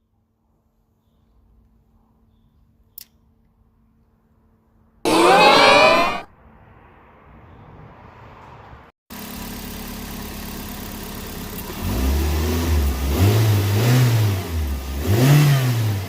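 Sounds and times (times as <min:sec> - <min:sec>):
car engine idling: 0:09.2 - 0:11.8
car engine revving: 0:11.8 - 0:16.0.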